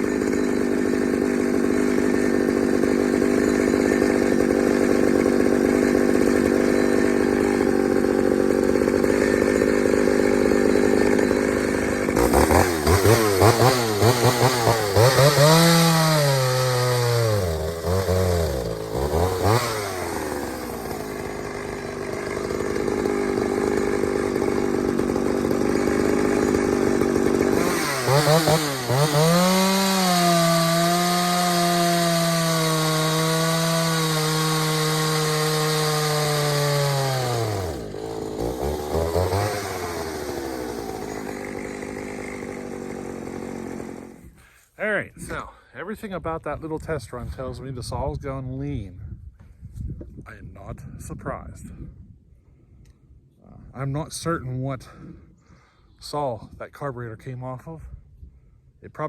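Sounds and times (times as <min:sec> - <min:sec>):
two-stroke chainsaw revving: 0:00.0 - 0:44.4.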